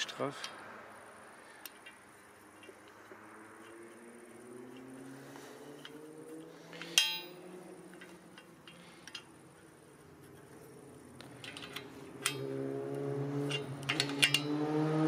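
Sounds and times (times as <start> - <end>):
light metal clicks: 1.5 - 14.6
metallic clink with ring: 5.7 - 9.6, 13.4 - 14.6.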